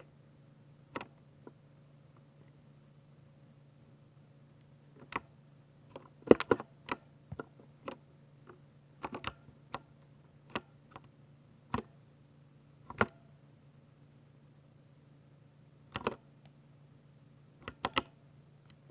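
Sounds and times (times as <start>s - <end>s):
faint low hum: 0.0s - 18.9s
mechanical keyboard typing: 16.0s - 16.2s, 17.6s - 18.1s.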